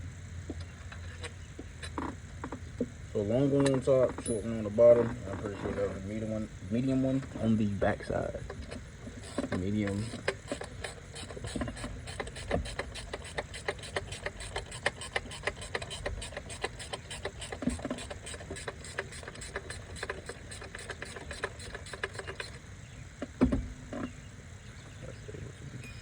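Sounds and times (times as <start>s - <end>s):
hand ratchet clicking: 8.5s - 22.6s.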